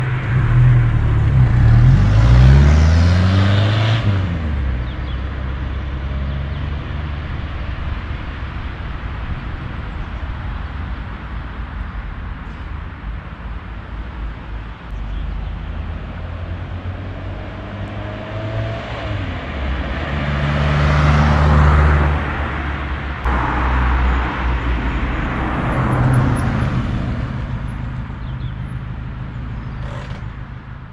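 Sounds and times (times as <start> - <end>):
car engine accelerating: 0.0 - 8.2, 15.0 - 30.9
road noise: 0.0 - 30.9
car engine running: 24.3 - 30.9.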